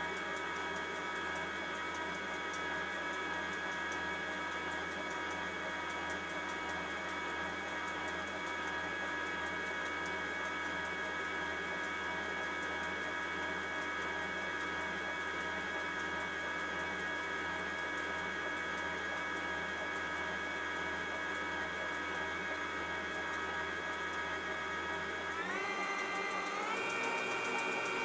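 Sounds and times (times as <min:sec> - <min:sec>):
electric mixer whining: 0:23.2 - 0:28.0.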